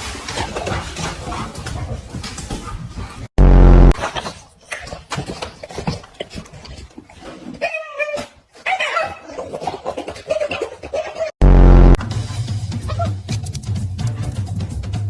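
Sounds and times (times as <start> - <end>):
loud low steady tone: 3.4 - 4.0, 11.4 - 12.1.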